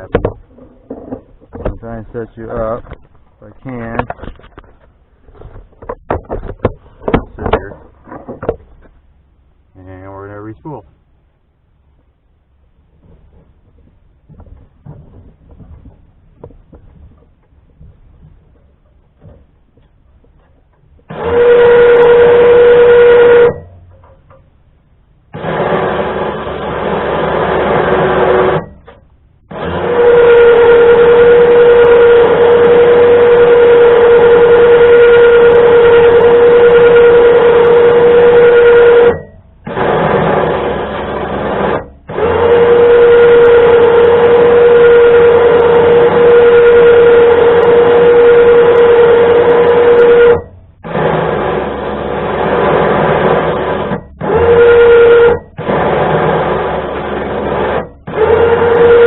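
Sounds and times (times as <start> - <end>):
electric winch motor whine: 21.0 - 24.1, 25.3 - 59.0.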